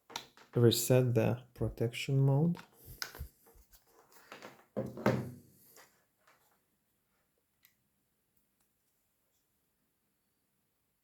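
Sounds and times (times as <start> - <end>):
knock: 4.8 - 5.4.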